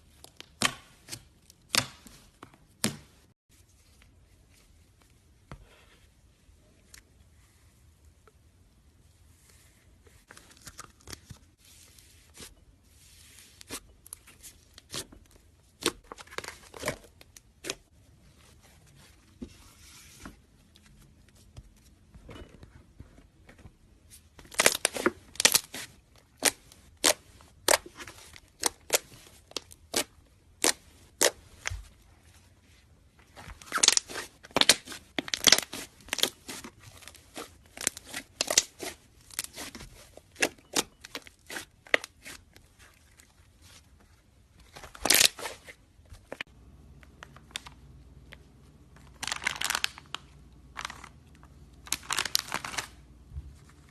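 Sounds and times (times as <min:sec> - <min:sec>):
crunchy slime crackling: 0:33.6 - 0:43.1.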